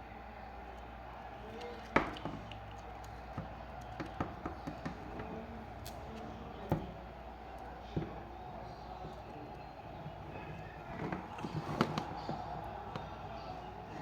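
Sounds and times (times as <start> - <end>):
plastic packaging taps and clicks: 1.5 - 6.9.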